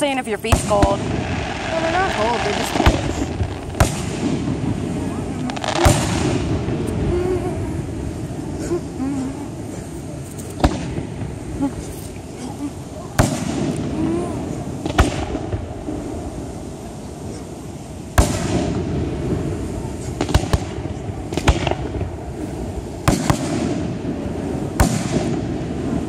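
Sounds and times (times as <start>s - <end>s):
fireworks bangs: 0.0s - 26.0s.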